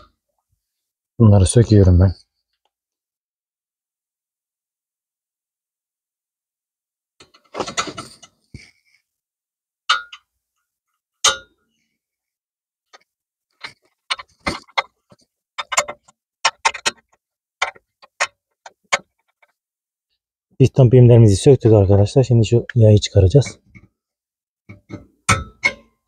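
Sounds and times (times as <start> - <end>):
metal rattling: 13.6 - 19.6.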